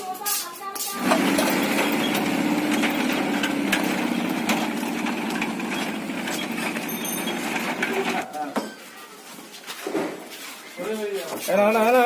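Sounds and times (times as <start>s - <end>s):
engine idling: 1.0s - 8.2s.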